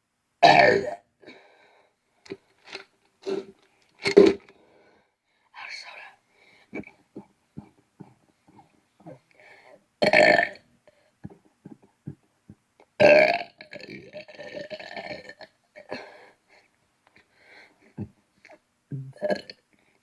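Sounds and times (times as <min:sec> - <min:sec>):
person burping: 0:00.4 - 0:01.1, 0:03.3 - 0:04.5, 0:10.0 - 0:10.6, 0:13.0 - 0:16.2, 0:18.9 - 0:19.6.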